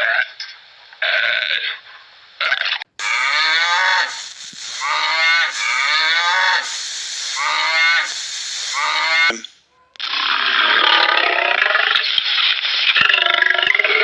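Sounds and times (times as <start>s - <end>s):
cattle mooing: 3.0s - 4.2s.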